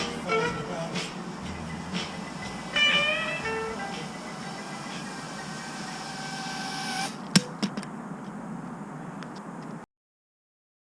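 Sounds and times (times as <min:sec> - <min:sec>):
quadcopter motors whining: 0:02.6 - 0:07.3
hiss: 0:03.4 - 0:07.2.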